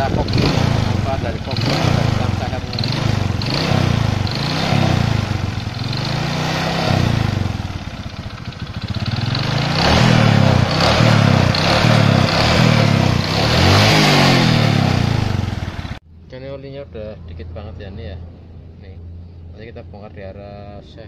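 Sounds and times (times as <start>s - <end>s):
small motorcycle engine revving: 0.0s - 16.0s
engine knocking: 7.5s - 14.0s.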